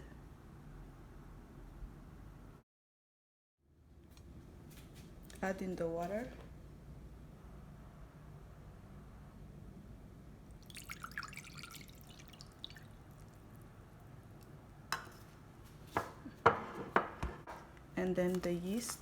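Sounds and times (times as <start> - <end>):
water dripping into container: 10.5 - 14.6.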